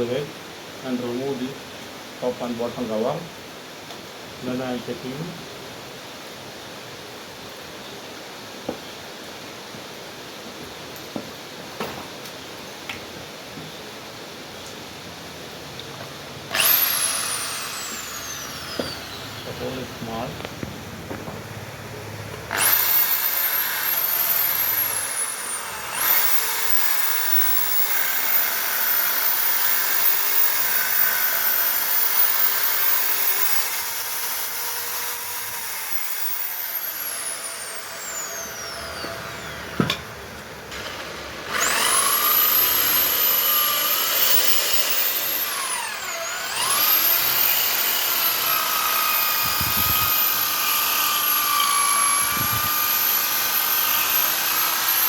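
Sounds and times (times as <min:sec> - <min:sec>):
power tool whining: 0:16.4 - 0:55.0.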